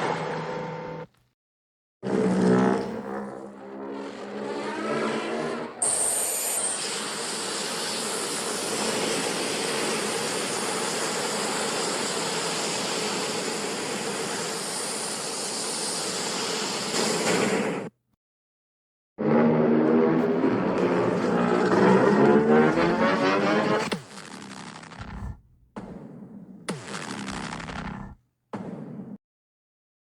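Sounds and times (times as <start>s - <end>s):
monster roar: 25.0s - 25.7s, 27.3s - 28.2s.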